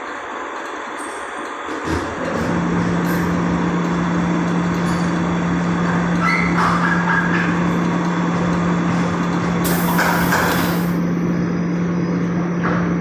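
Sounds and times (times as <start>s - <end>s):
burst of hiss: 9.6s - 11.0s
mechanical whirr: 9.6s - 11.0s.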